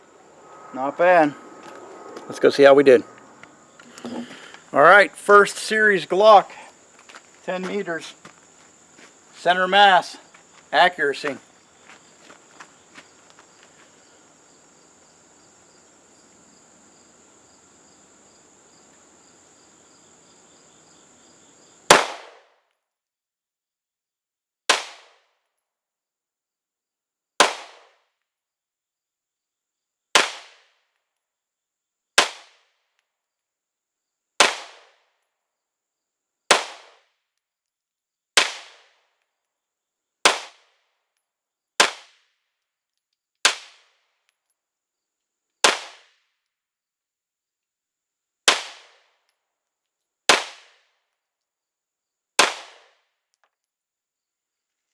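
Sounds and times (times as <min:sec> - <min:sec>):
insects trilling: 0:00.0 - 0:22.0
pistol shots: 0:21.9 - 0:22.4.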